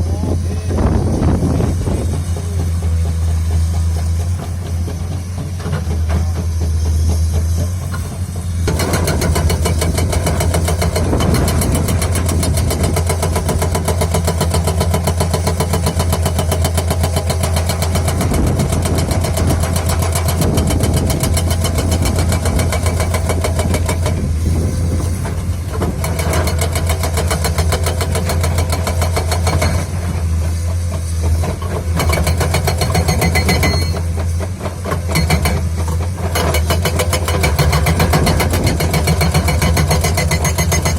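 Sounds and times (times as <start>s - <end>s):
excavator diesel engine: 0.0s - 40.9s
hydraulic breaker hammering: 8.6s - 24.3s, 31.6s - 40.9s.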